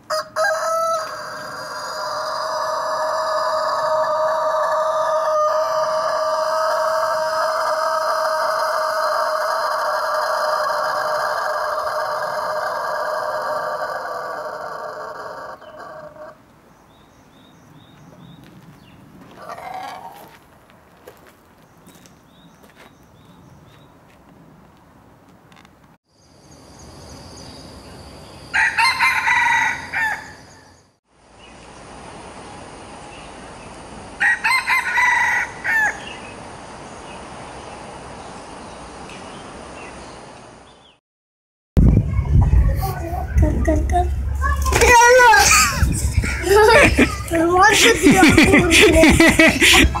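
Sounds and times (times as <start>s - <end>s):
rooster crowing: 0.1s - 16.4s, 28.5s - 30.8s, 34.2s - 36.2s, 47.8s - 50.0s.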